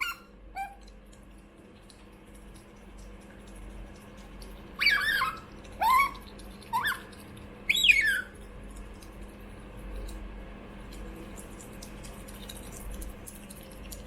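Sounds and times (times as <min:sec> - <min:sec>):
otter squealing chirps: 0:00.0 - 0:00.8, 0:04.8 - 0:08.4.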